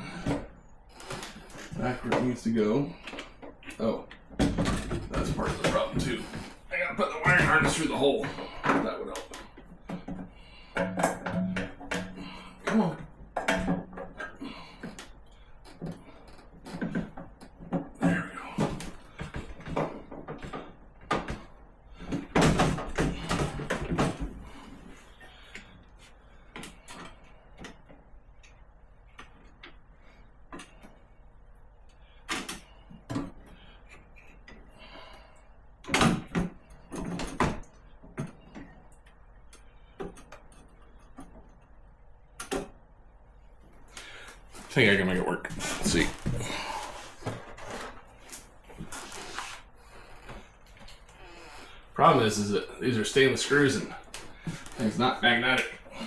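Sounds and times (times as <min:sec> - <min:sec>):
ice maker parts knocking and rattling: 0:07.2 - 0:14.4.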